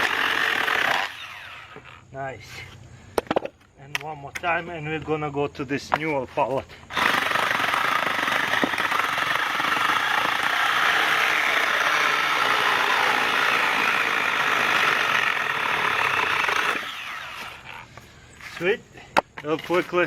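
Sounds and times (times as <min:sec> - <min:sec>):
chainsaw cutting wood: 0:00.0 - 0:02.0, 0:06.9 - 0:18.0.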